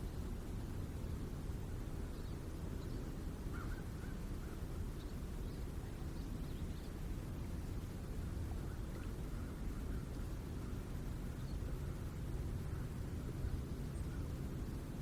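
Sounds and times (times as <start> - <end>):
distant road traffic rumble: 0.0 - 15.0
bird calls: 2.1 - 7.0.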